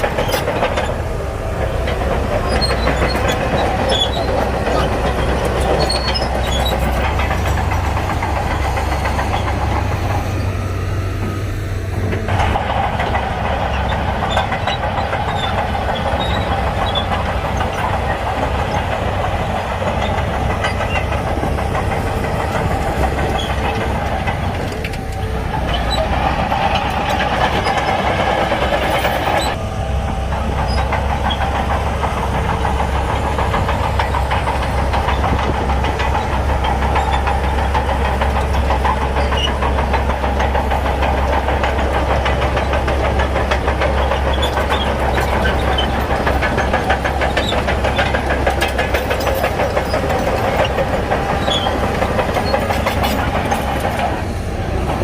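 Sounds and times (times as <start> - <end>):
bulldozer diesel engine: 0.0 - 55.0
steel tracks clattering: 0.0 - 55.0.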